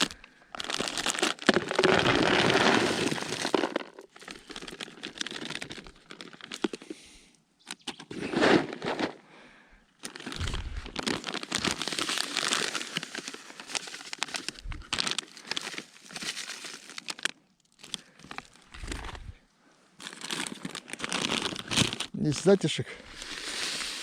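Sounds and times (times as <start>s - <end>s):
packaging crinkling and rustling: 0.0s - 6.9s, 10.0s - 19.4s, 20.0s - 24.0s
low rumbles: 10.4s - 11.0s.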